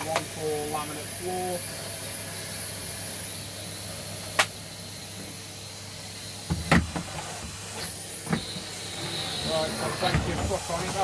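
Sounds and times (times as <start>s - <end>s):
vacuum attachments knocking: 6.5s - 9.1s, 9.8s - 11.0s.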